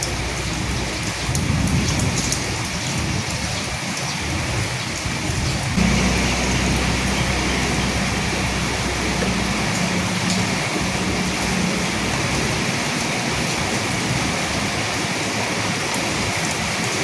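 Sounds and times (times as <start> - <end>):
steady rain falling: 0.0 - 17.0
thunder rumble: 5.5 - 16.3.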